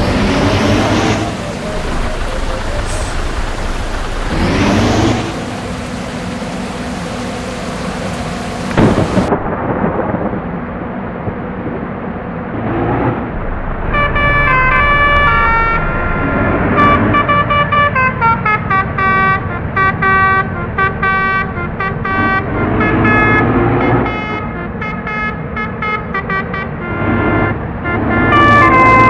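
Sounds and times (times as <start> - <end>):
bus musical horn tune: 0.0 - 9.3, 16.8 - 29.0
engine and road rumble: 0.0 - 9.3.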